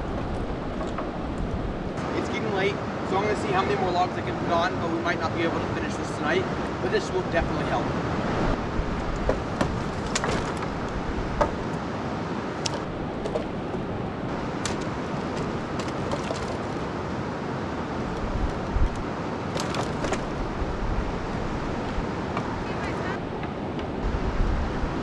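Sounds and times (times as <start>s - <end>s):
logs knocking and clacking: 0.0s - 2.0s, 8.9s - 11.8s, 12.5s - 17.1s, 18.0s - 20.6s, 21.6s - 24.0s
steady rushing noise: 0.0s - 25.0s.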